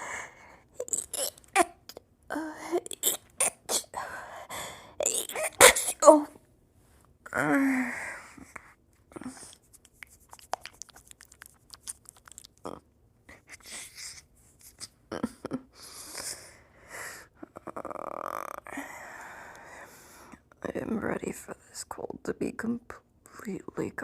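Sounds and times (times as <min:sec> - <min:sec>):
woman stifling sneezes: 0:05.0 - 0:06.3.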